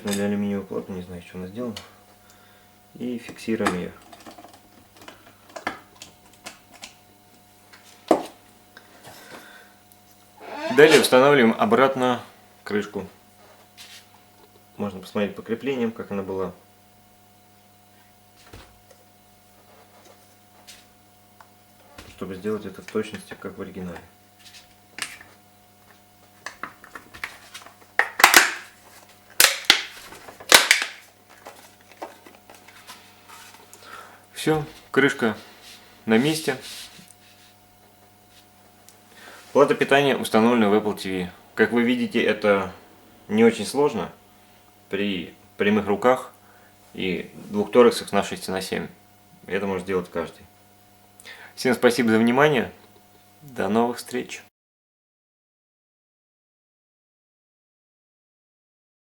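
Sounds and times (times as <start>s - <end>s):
sharp plastic snaps: 28.0s - 28.6s, 29.4s - 29.9s, 30.5s - 31.0s.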